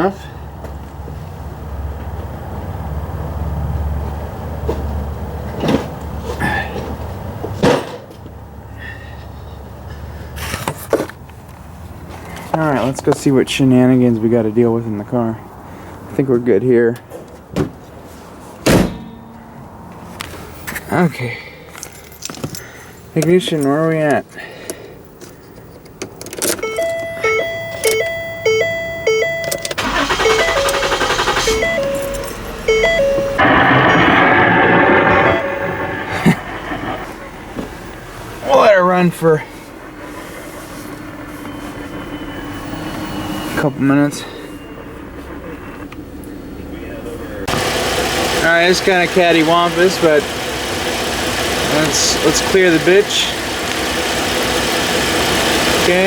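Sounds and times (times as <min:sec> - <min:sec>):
car engine cranking and starting: 0:25.5 - 0:46.3, 0:47.4 - 0:56.0
dashboard warning tones: 0:26.6 - 0:38.0, 0:47.5 - 0:56.0.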